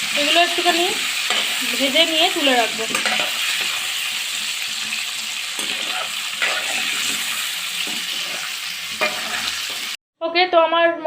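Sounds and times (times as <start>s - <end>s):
potatoes sizzling in oil: 0.0s - 10.0s.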